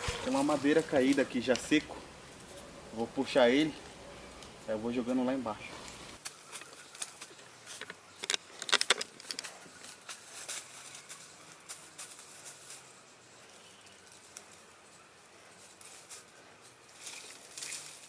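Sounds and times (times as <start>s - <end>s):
dry branches crackling through brush: 0.0s - 18.0s.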